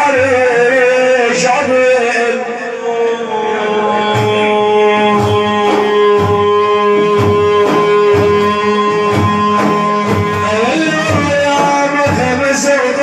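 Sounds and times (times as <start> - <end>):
frame drums beating: 4.1 - 13.0.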